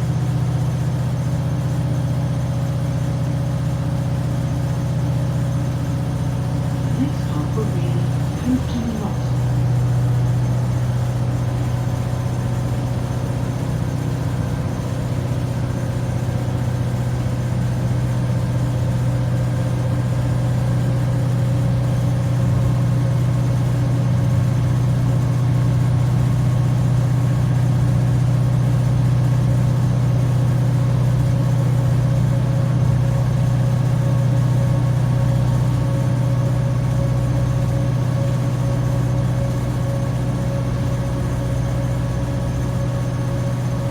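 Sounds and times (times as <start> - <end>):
train diesel engines droning: 6.8 - 13.3.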